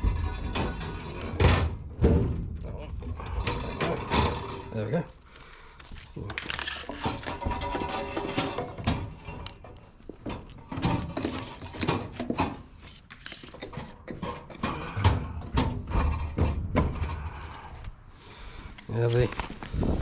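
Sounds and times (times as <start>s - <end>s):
metal cabinet knocks and clicks: 0.0s - 4.7s, 13.7s - 17.3s.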